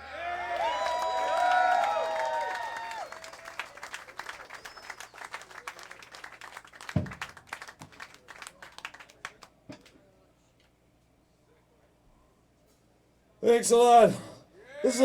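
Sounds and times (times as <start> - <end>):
audience clapping: 0.2 - 10.0.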